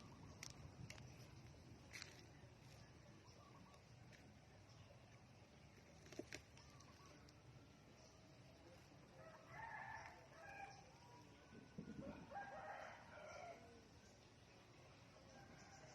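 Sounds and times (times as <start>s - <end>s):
faint rooster crowing: 9.1s - 13.9s, 15.3s - 15.9s.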